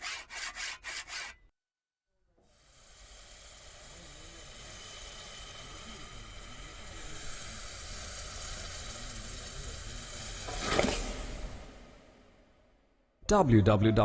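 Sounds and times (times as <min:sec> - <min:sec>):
hot iron sizzling in water: 0:02.4 - 0:12.4.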